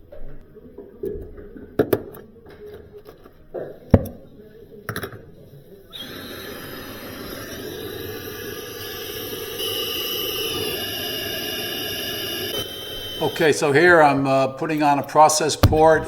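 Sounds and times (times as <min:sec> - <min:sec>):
gas hissing: 0:05.9 - 0:16.0.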